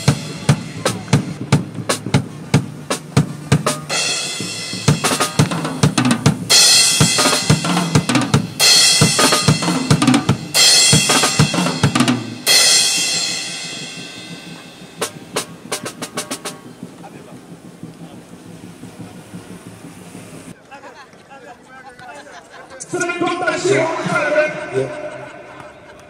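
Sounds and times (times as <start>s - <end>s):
ringing cymbals: 3.8s - 20.5s.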